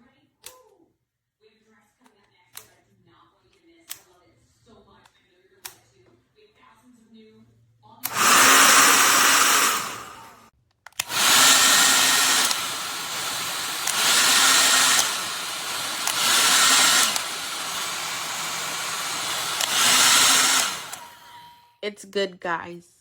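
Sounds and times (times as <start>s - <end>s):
hair dryer running: 8.0s - 10.4s, 11.0s - 21.6s.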